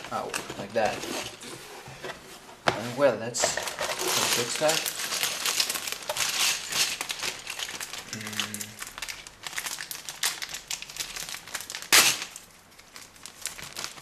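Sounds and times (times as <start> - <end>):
packaging crinkling: 3.4 - 14.0.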